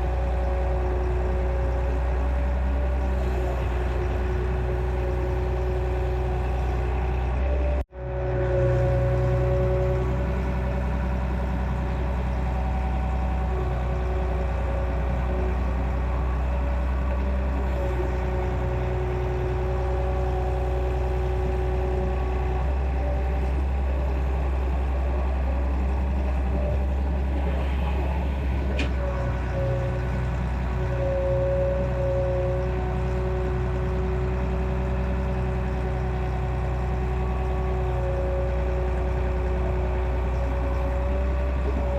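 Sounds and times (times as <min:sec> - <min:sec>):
excavator engine running: 0:00.0 - 0:41.9.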